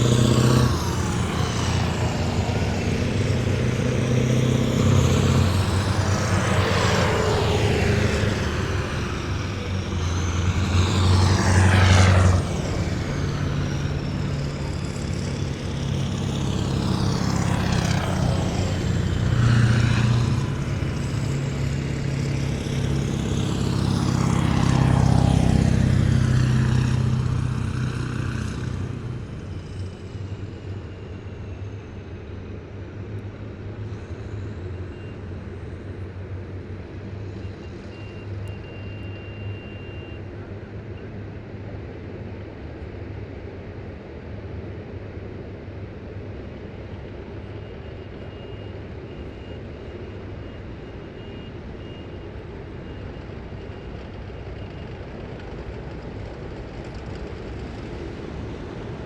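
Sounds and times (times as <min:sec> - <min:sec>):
heavy vehicles driving past: 0:00.0 - 0:42.4, 0:44.1 - 0:59.0.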